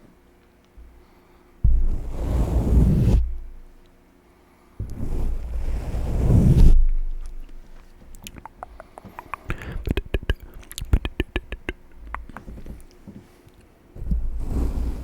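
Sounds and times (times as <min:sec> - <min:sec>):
wet mouth clicks and smacks: 0:08.1 - 0:13.0.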